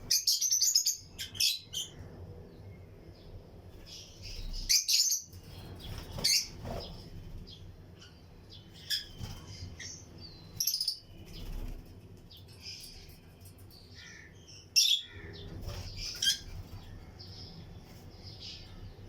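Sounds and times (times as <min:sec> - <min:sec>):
faint bird chatter: 0:00.0 - 0:19.0
lovebirds chirping shrilly: 0:03.8 - 0:11.8, 0:12.5 - 0:18.9
wing flutters: 0:05.4 - 0:07.5.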